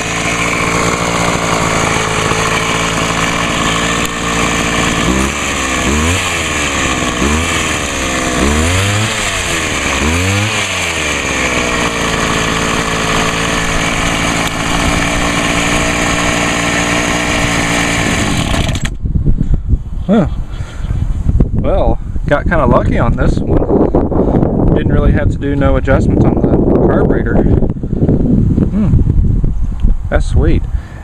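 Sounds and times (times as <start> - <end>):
hedge trimmer engine revving: 0.0 - 19.0.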